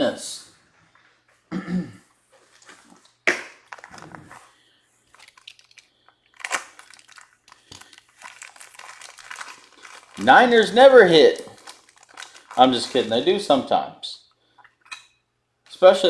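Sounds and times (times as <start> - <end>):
plastic rustles and taps: 2.5 - 4.4, 5.1 - 10.7.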